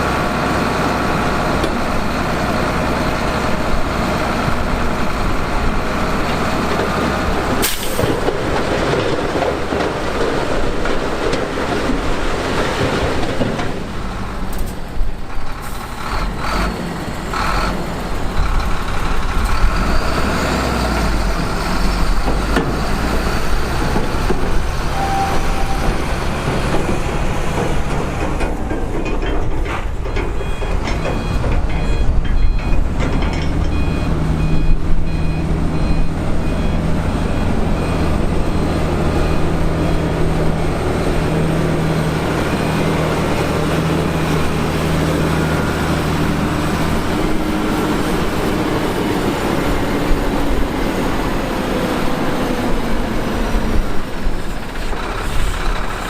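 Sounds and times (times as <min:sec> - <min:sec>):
diesel construction machinery: 0:00.0 - 0:56.0
reversing alarm beeping: 0:24.9 - 0:26.9, 0:30.4 - 0:40.6.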